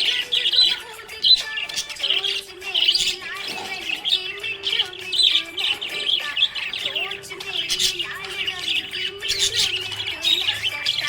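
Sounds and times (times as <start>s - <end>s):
budgerigars chirping and chattering: 0.0s - 11.0s.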